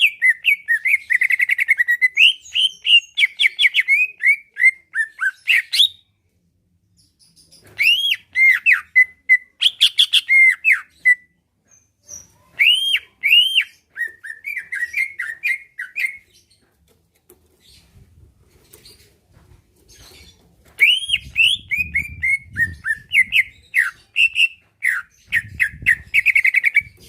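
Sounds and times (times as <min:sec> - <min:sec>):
bird singing whistled phrases: 0:12.1 - 0:16.2, 0:20.8 - 0:26.9.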